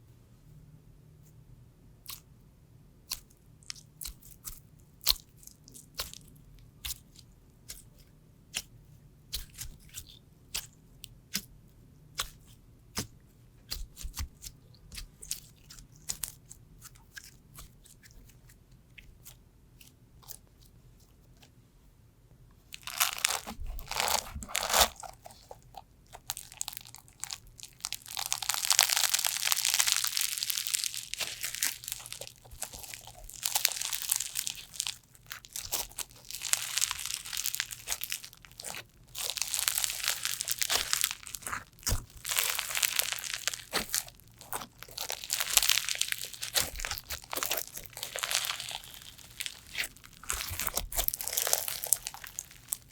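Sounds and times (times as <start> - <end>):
slime crackling and popping: 22.8 - 52.9.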